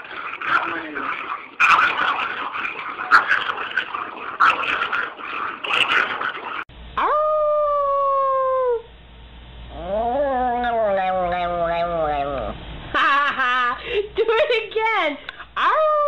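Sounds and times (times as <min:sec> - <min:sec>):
irregular noise: 0:00.0 - 0:08.1
dog howling: 0:09.7 - 0:12.5.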